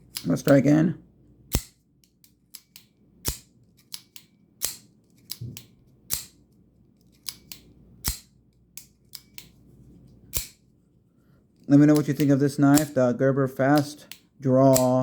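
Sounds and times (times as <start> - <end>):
folding knife snapping open: 13.8 - 15.0.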